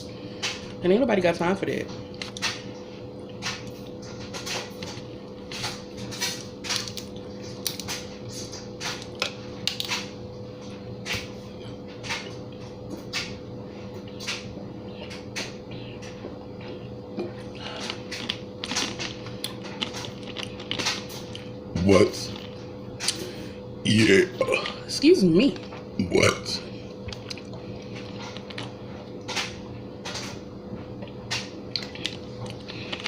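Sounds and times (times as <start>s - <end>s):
person chewing crunchy food: 15.0s - 23.4s, 25.6s - 33.0s.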